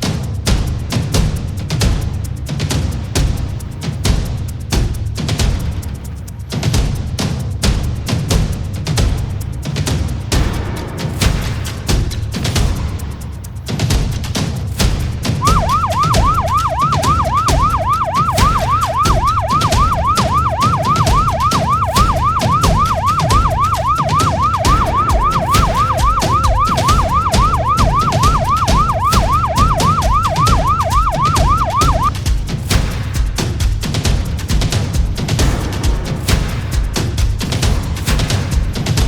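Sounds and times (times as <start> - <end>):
background music with steady beat: 0.0 - 39.0
electronic alarm siren yelping: 15.4 - 32.1.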